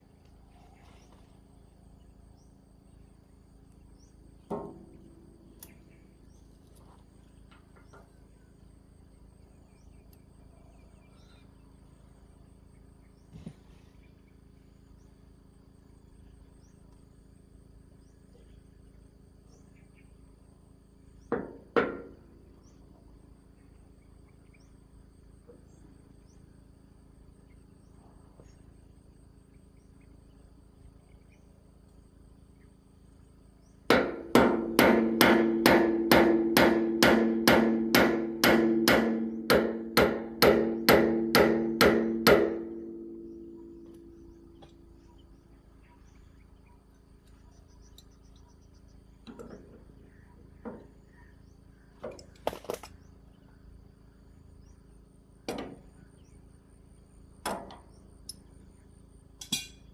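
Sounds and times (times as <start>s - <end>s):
hammer striking metal: 33.9s - 43.2s, 59.4s - 59.8s.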